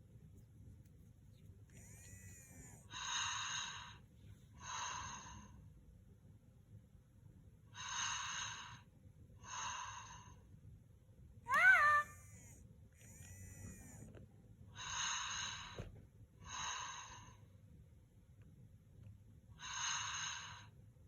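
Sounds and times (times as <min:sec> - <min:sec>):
toy snoring sounds: 0:01.7 - 0:03.9, 0:11.5 - 0:14.1, 0:14.8 - 0:15.8, 0:19.6 - 0:20.6
toy high rising squeak: 0:11.5 - 0:14.0.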